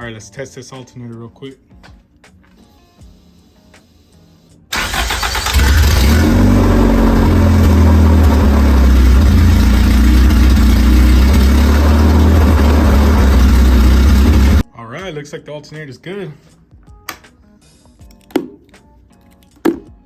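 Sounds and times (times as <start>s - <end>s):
car engine starting and idling: 4.7s - 14.6s.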